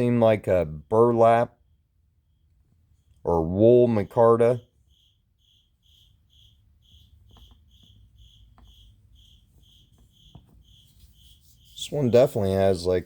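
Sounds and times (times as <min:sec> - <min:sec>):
cricket chirping: 0:01.6 - 0:03.2, 0:04.6 - 0:12.8
faint handling ticks: 0:04.8 - 0:13.0.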